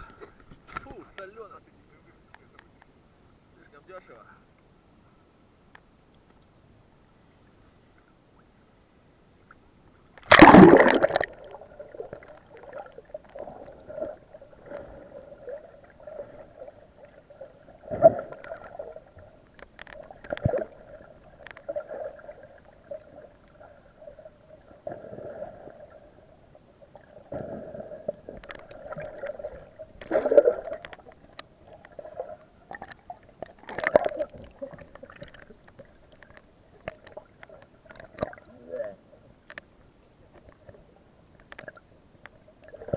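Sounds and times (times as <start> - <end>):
faint steady hum: 0.0 - 42.9
water gurgling and sloshing: 9.4 - 39.6, 40.3 - 42.9
water splashing: 10.2 - 38.5.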